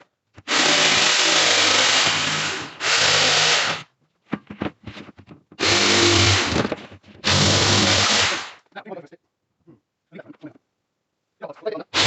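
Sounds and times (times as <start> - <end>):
electric power tool running: 7.2 - 8.6.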